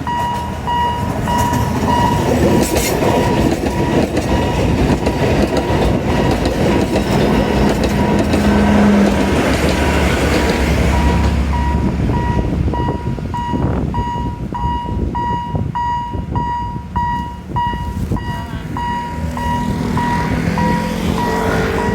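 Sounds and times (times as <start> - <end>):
train rumble: 0.0 - 21.9
level crossing bell dinging: 11.0 - 21.9.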